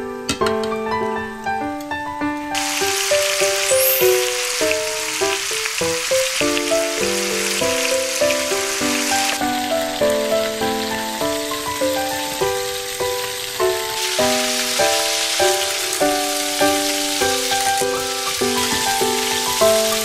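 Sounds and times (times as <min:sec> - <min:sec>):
piano music: 0:00.0 - 0:20.0
food sizzling in a pan: 0:02.6 - 0:20.0.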